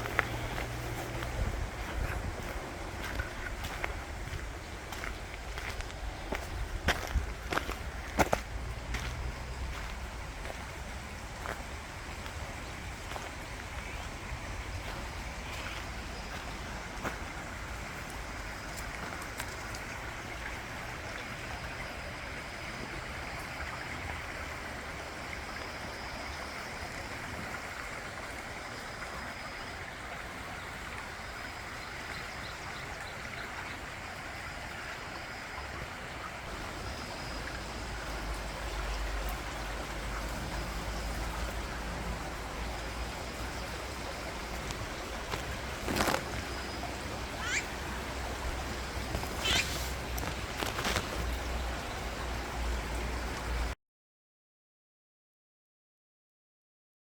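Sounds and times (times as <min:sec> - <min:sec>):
forest stream rushing: 0:00.0 - 0:53.8
short high bird notes: 0:47.4 - 0:47.7.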